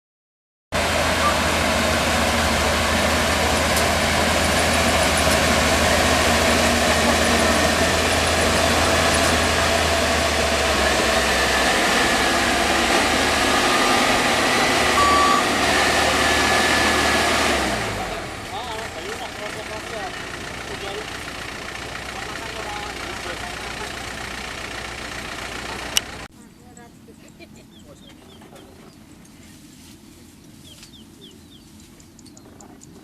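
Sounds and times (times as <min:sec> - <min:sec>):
combine harvester engine running: 0:00.8 - 0:33.0.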